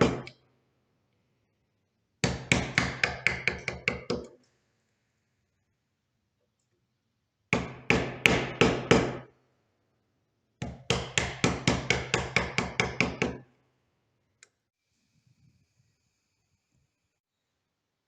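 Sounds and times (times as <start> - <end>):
hammer striking wood: 0.0 - 0.3, 2.2 - 4.3, 7.6 - 9.3, 10.6 - 13.4.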